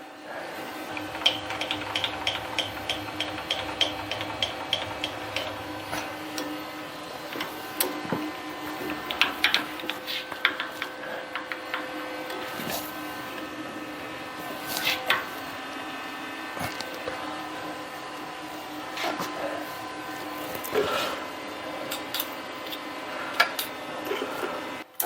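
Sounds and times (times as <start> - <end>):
steady hum: 0.0 - 25.0
metal parts clicking and knocking: 0.9 - 5.6.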